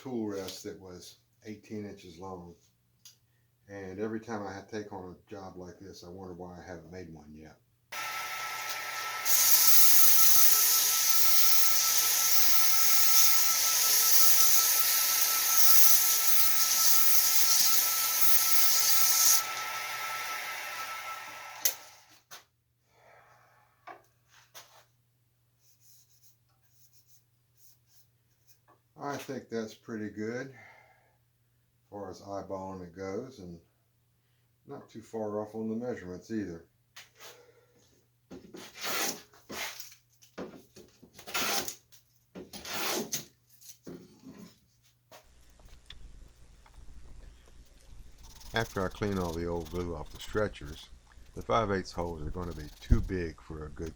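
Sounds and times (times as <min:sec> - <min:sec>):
tool rubbing spinning wood: 0:08.0 - 0:21.6, 0:45.3 - 0:53.9
lathe whining: 0:08.0 - 0:21.9, 0:45.3 - 0:53.0
rasping scrape on wood: 0:47.3 - 0:50.3.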